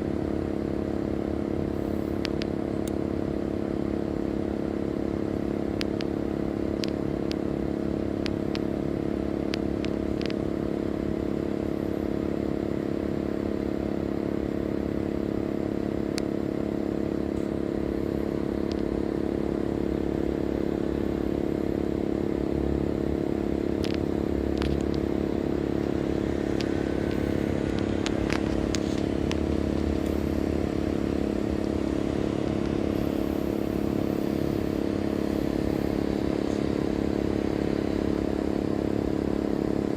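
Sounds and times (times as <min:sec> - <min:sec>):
air conditioner compressor humming: 0:00.0 - 0:39.9.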